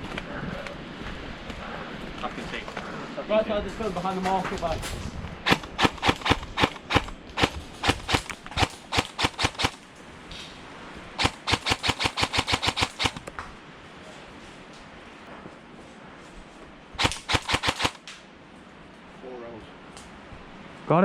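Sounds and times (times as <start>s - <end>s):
airsoft gun firing clicks: 5.4s - 9.8s, 11.2s - 13.4s, 17.0s - 18.1s.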